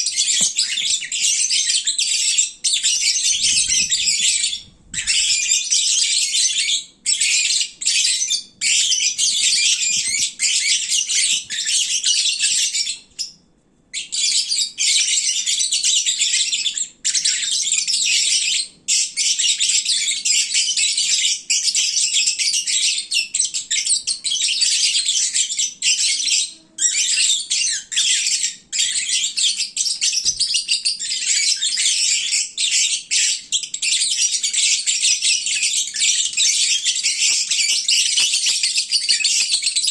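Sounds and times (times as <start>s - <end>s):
lovebirds chattering and chirping: 0.0s - 7.5s, 24.5s - 39.9s.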